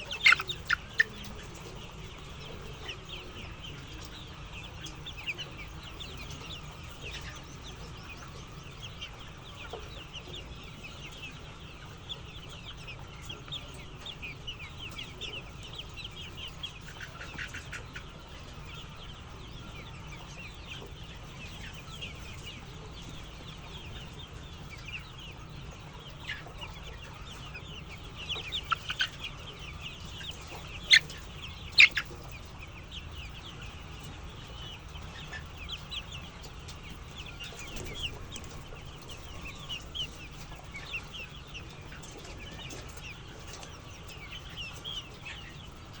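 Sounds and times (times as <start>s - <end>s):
sharp chicken calls: 0.0s - 12.4s, 25.0s - 46.0s
chickens chirping and clucking: 0.0s - 46.0s.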